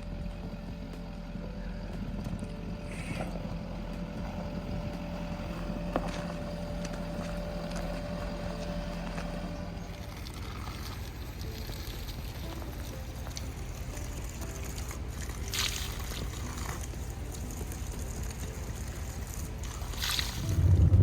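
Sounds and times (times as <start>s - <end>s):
vehicle engine humming: 0.0s - 21.0s.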